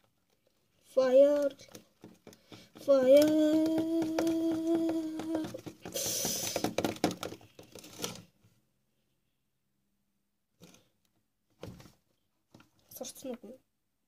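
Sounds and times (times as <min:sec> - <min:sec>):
small clicks and knocks: 0:01.3 - 0:08.3.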